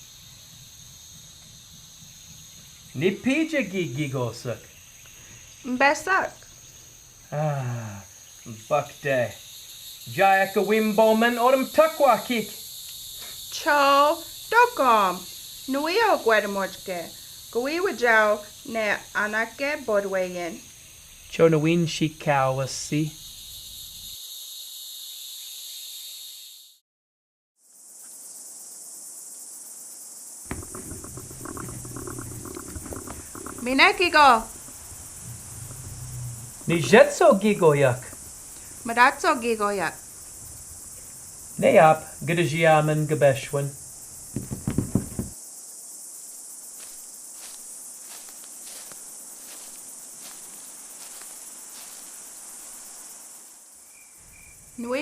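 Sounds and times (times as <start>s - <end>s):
crickets chirring: 0.0s - 26.8s, 27.6s - 55.0s
faint ticks: 5.0s - 5.6s, 12.8s - 13.4s, 30.5s - 37.1s, 38.0s - 38.8s
low rumble: 34.4s - 36.8s.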